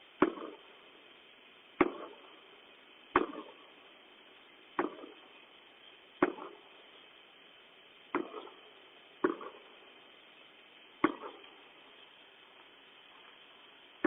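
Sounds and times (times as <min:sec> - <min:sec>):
distant fireworks bangs: 0:00.2 - 0:00.8, 0:01.8 - 0:02.4, 0:03.1 - 0:03.8, 0:04.7 - 0:05.4, 0:06.2 - 0:06.8, 0:08.1 - 0:10.0, 0:11.0 - 0:11.7.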